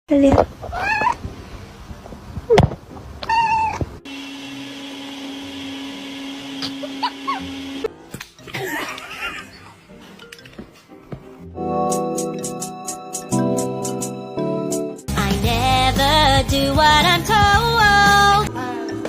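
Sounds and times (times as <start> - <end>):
cat meowing: 0.7 - 1.2, 3.2 - 3.8.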